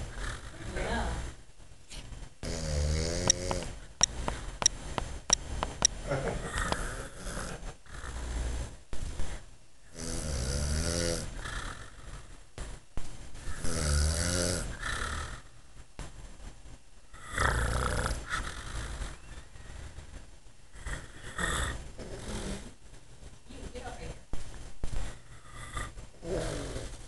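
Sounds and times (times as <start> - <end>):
man snoring: 2.4 - 3.7, 9.9 - 12.1, 13.6 - 15.4, 17.2 - 19.0.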